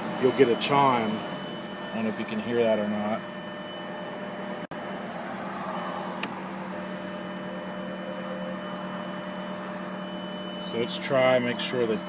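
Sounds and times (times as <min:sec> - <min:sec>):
faint held tones: 0:00.0 - 0:12.0
steady electrical hum: 0:00.0 - 0:12.0.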